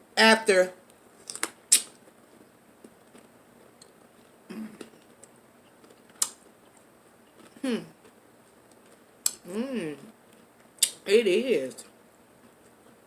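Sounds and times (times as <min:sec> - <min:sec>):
person humming mm: 0:04.5 - 0:04.9, 0:07.6 - 0:08.0, 0:09.4 - 0:10.1.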